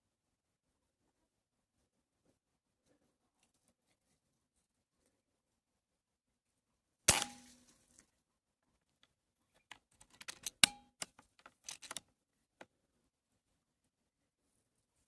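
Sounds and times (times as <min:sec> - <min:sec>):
metallic clicks and clinks: 0:10.0 - 0:12.0.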